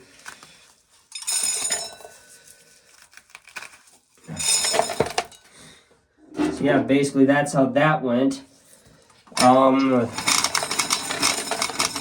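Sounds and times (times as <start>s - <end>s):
metal containers clattering: 4.2s - 5.6s, 9.4s - 12.0s.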